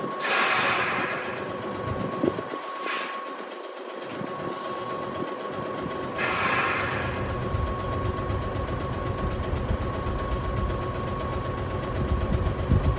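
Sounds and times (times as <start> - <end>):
bus engine idling: 0.0 - 12.9
air brake hiss: 0.2 - 1.5, 2.6 - 3.4, 6.2 - 7.3.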